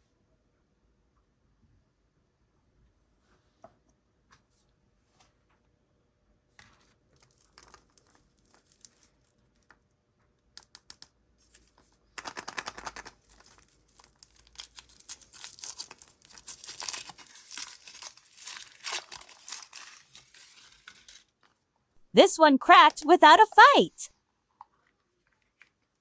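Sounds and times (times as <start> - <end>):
wrapper crinkling and tearing: 7.2 - 9.3, 11.5 - 21.6.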